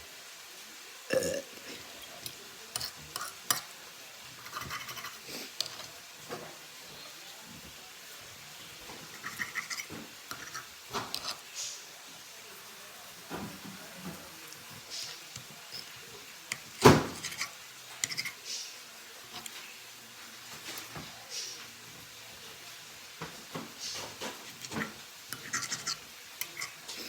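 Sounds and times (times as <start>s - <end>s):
utensils clicking against a dish: 2.0s - 3.7s, 4.4s - 6.0s, 8.9s - 11.8s, 14.1s - 19.7s, 23.6s - 27.0s.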